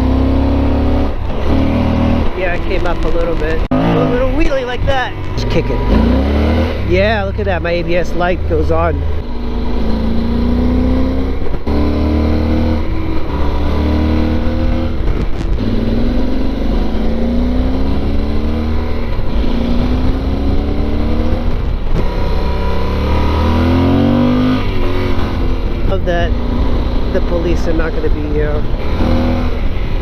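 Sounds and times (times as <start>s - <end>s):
motorcycle engine accelerating hard: 0.0s - 30.0s.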